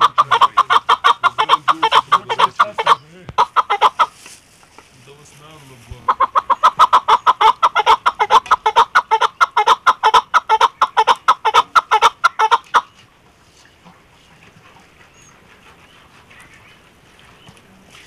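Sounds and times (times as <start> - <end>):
partridge calling chuck notes: 0.0 - 4.1, 6.0 - 12.9.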